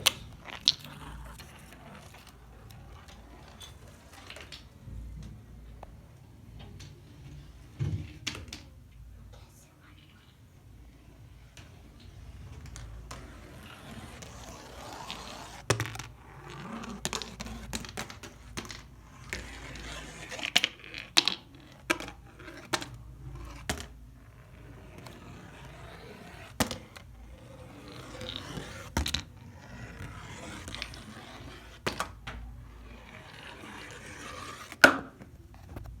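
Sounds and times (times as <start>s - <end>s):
marbles rolling on cardboard track: 0.0s - 4.8s, 11.6s - 35.2s.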